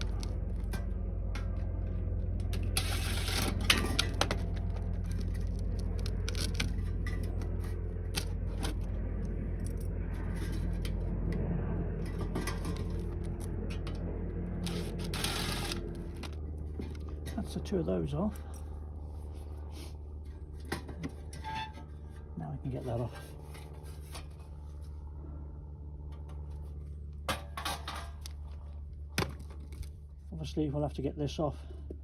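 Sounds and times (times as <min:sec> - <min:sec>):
metal scraping: 0:00.0 - 0:18.3, 0:19.2 - 0:25.0
steady low hum: 0:00.0 - 0:32.0.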